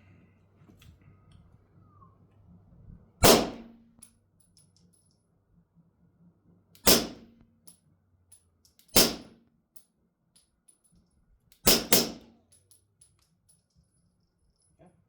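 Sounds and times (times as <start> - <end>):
suppressed pistol shots: 3.2 - 3.7, 6.8 - 7.3, 8.9 - 9.4, 11.6 - 12.2.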